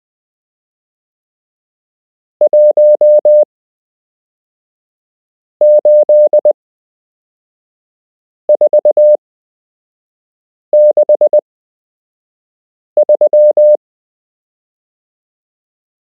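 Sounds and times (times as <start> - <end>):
morse code beep tone: 2.4 - 3.5, 5.6 - 6.6, 8.5 - 9.2, 10.8 - 11.4, 13.0 - 13.8.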